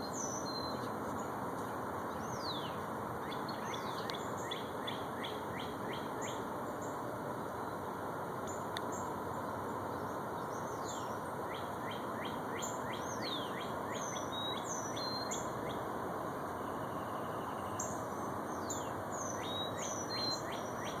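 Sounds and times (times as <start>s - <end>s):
steady background hiss: 0.0s - 21.0s
birds chirping: 8.5s - 21.0s.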